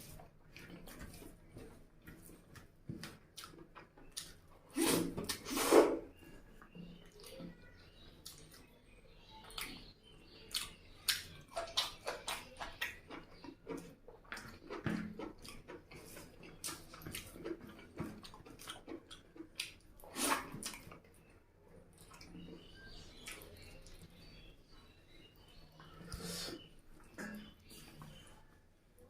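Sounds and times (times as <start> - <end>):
wet chewing and lip-smacking: 0.0 - 4.5, 9.4 - 21.3.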